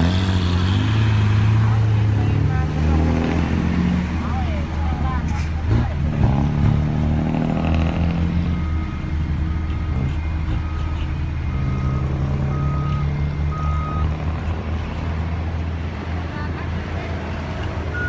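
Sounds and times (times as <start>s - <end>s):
diesel engine running: 0.0s - 18.0s
reversing alarm beeps: 8.4s - 14.1s.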